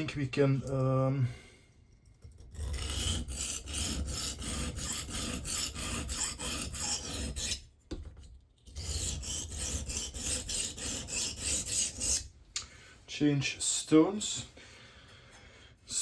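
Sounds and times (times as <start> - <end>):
knife rasping on sharpening stone: 2.5 - 7.6, 8.8 - 12.3.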